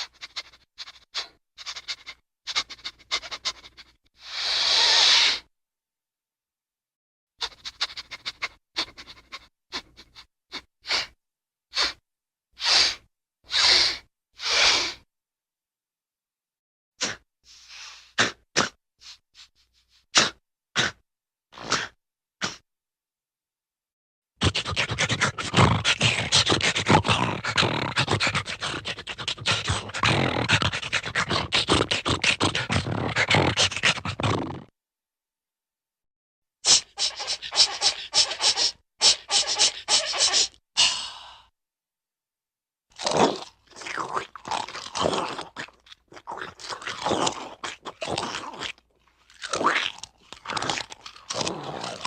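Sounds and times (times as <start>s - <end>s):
cartoon dog sniffing: 0.0s - 5.5s, 7.4s - 12.0s, 12.6s - 15.0s, 17.0s - 21.0s, 21.6s - 22.6s, 24.4s - 34.7s, 36.6s - 40.6s.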